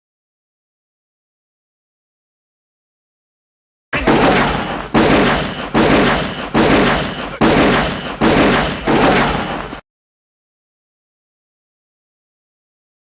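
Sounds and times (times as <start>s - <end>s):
echoing gunshots: 4.0s - 9.8s.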